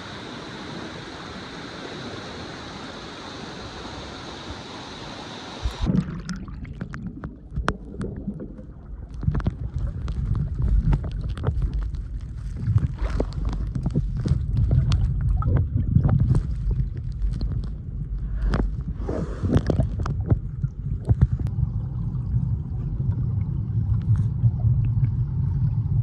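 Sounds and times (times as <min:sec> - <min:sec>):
waterfall hiss: 0:00.0 - 0:05.9
muffled water sloshing: 0:05.6 - 0:26.0.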